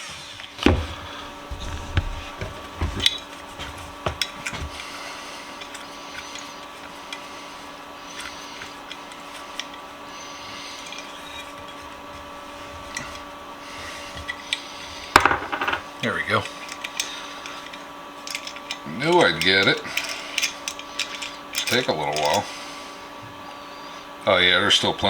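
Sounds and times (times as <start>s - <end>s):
electrical hum: 0.0s - 25.0s
knocks and clicks on metal parts: 15.2s - 15.9s.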